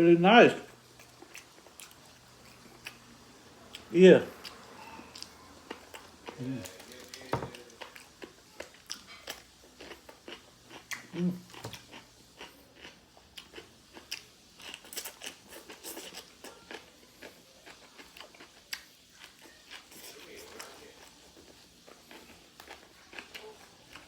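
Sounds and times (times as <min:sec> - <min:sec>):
crisp chewing crunches: 0:04.4 - 0:24.0
person humming: 0:06.4 - 0:06.8.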